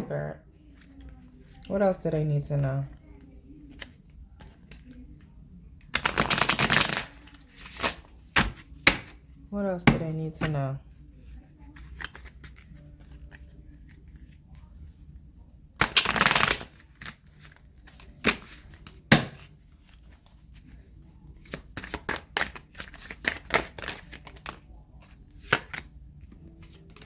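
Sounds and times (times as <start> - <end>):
card edges riffling: 6.0 - 9.2, 15.8 - 19.5, 21.4 - 24.6
cards clicking and flicking: 6.0 - 9.2, 11.8 - 14.0, 15.8 - 19.5, 21.4 - 25.9, 26.6 - 27.0.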